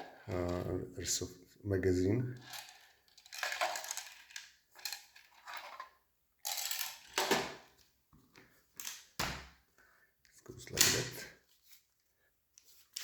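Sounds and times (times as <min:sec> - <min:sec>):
plastic magazines clattering: 0:02.4 - 0:05.8.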